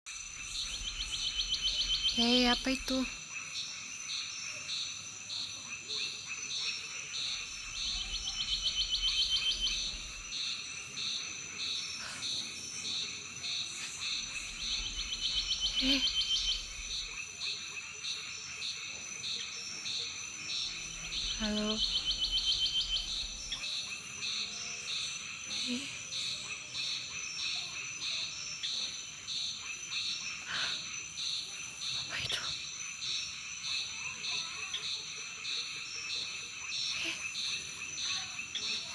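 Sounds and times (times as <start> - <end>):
insects droning: 0.1 - 38.9
frog call pulsing: 14.0 - 17.2.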